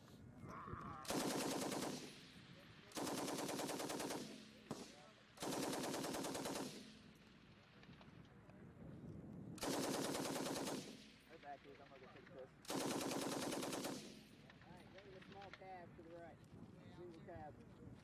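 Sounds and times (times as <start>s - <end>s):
machine gun bursts: 1.0s - 2.1s, 2.9s - 4.8s, 5.4s - 6.8s, 9.6s - 10.9s, 12.7s - 14.1s.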